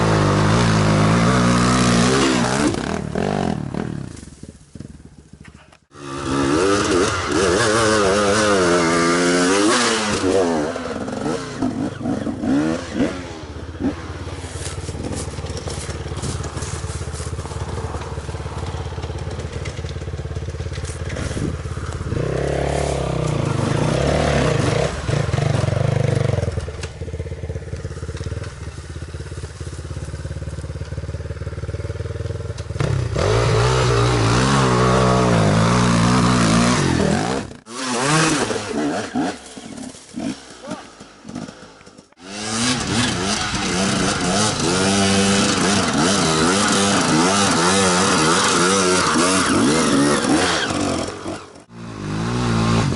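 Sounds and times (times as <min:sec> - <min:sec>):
motorcycle engine revving: 0:00.0 - 0:52.9.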